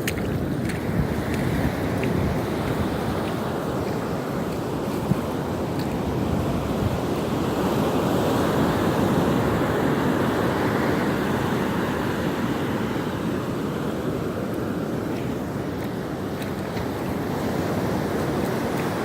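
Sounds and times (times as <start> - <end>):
wind on microphone: 0.0 - 13.5
ocean waves breaking: 0.0 - 19.0.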